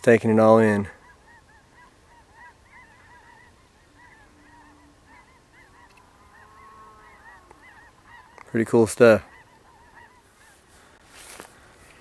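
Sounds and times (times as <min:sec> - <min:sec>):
geese honking: 0:00.2 - 0:11.0.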